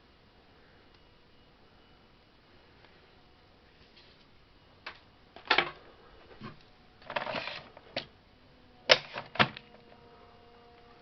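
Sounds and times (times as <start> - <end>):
plastic clicks and knocks of printer: 8.9 - 9.7.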